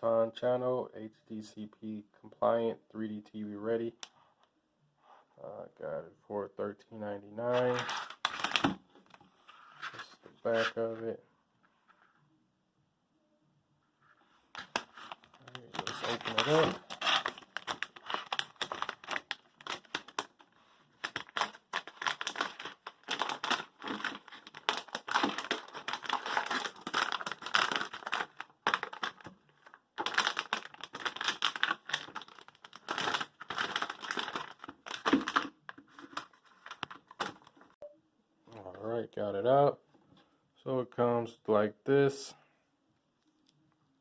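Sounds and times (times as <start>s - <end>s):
packaging crinkling and tearing: 7.5s - 8.8s, 14.6s - 37.6s.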